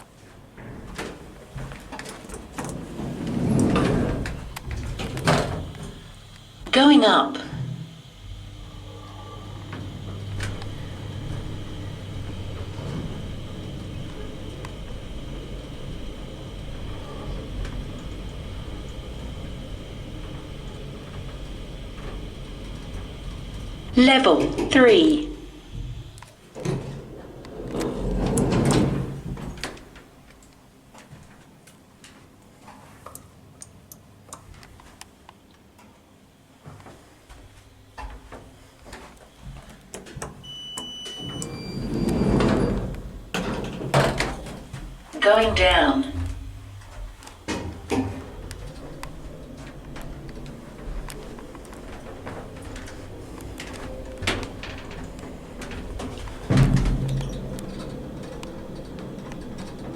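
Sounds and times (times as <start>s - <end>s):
lift rumbling: 0.0s - 30.4s, 40.4s - 59.9s
faint high whine: 40.4s - 44.1s.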